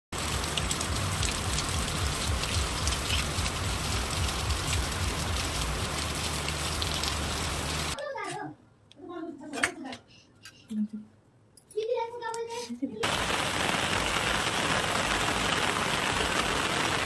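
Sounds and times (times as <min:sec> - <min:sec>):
close raindrop hits: 0:00.2 - 0:08.0, 0:13.0 - 0:17.0
heavy rain hiss: 0:00.2 - 0:08.0, 0:13.0 - 0:17.0.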